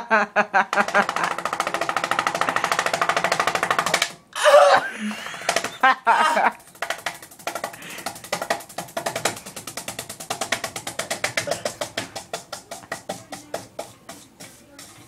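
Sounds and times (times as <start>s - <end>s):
fan blades smacking a hand: 0.7s - 4.2s, 4.8s - 15.0s.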